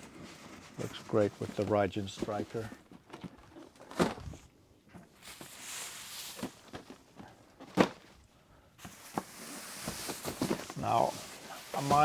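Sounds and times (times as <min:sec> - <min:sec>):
packaging rustling: 0:08.8 - 0:12.0.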